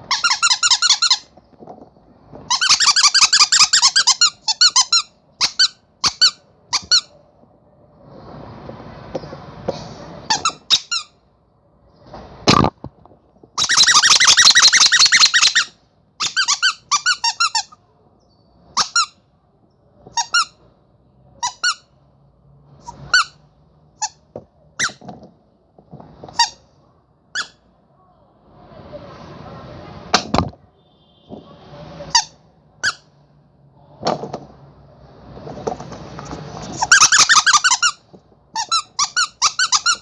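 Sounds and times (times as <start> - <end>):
squeaky toy squeaking: 0.0 - 1.3, 2.5 - 7.2, 10.3 - 11.2, 13.6 - 17.8, 18.7 - 19.2, 20.1 - 20.6, 21.4 - 22.0, 22.8 - 23.4, 24.0 - 24.2, 24.8 - 25.0, 26.3 - 26.7, 27.3 - 27.6, 32.1 - 33.1, 36.6 - 40.0.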